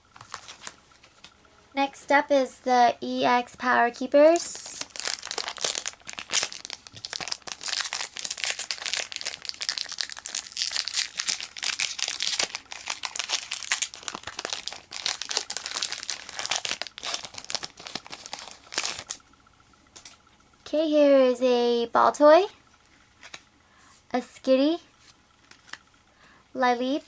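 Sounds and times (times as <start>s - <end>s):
foil wrapper crinkling and tearing: 0.1s - 0.8s, 4.4s - 19.2s.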